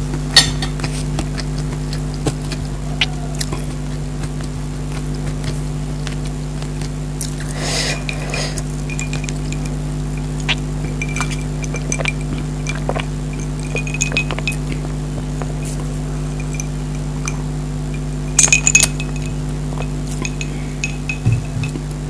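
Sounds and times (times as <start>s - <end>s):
steady low hum: 0.0s - 22.0s
utensil clinking on a plate: 0.4s - 1.0s, 7.9s - 14.8s, 16.4s - 21.9s.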